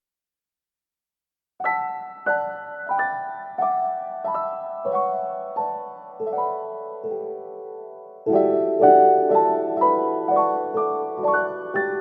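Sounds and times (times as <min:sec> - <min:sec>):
slow piano chords: 0:01.6 - 0:12.0.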